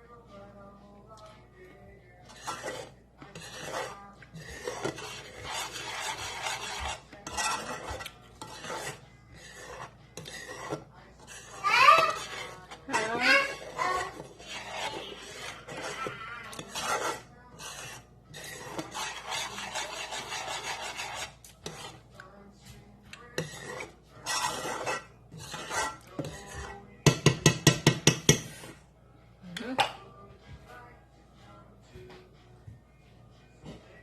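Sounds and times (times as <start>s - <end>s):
utensil scraping a pan: 2.1s - 28.9s.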